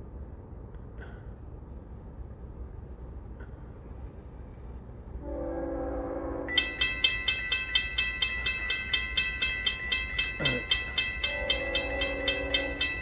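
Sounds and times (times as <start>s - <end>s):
locomotive horn chord: 5.2s - 6.8s, 10.2s - 13.0s
railroad crossing bell ringing: 6.1s - 13.0s.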